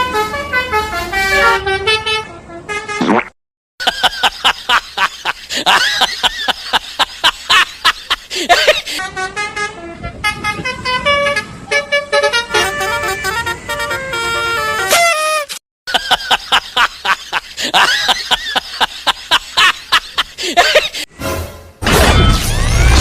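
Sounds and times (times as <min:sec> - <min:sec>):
multi-tone bus horn tune: 0:00.0 - 0:03.1, 0:08.9 - 0:15.6.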